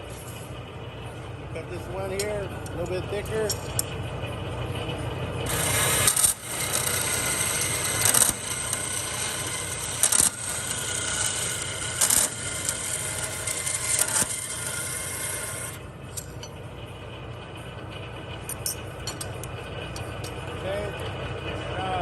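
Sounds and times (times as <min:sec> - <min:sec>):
bandsaw blade cutting metal: 0:05.5 - 0:16.5.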